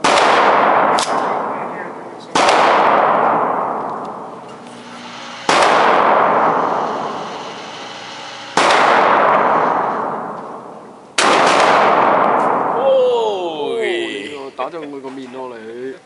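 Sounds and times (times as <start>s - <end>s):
shotgun shots echoing: 0.0s - 4.4s, 5.3s - 7.6s, 8.5s - 12.8s.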